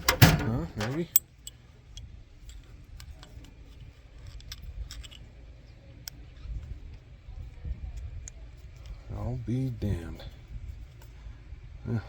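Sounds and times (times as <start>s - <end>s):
small metal parts clicking: 0.0s - 5.3s
steady low hum: 0.0s - 12.0s.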